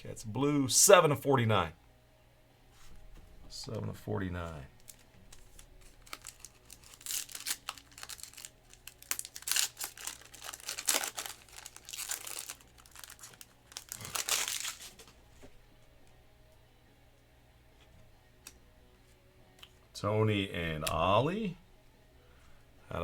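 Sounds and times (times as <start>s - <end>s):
wrapper tearing and crinkling: 4.8s - 15.2s.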